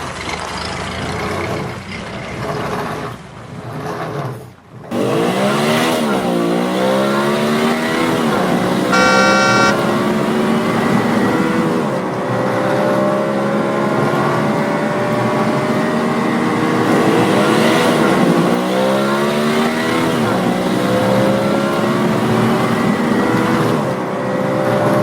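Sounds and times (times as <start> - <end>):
racing car engine revving: 4.9 - 25.0
buzzy tone: 8.9 - 9.8.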